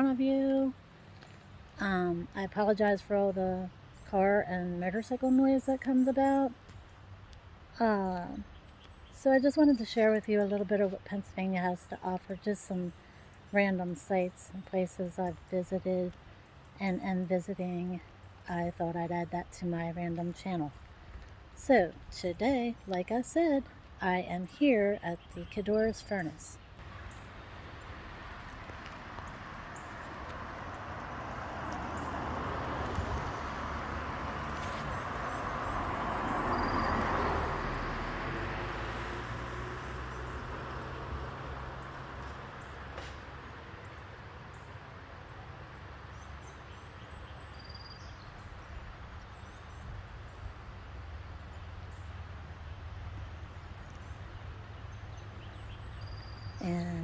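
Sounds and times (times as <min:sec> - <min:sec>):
vehicle passing by: 0:26.8 - 0:43.8.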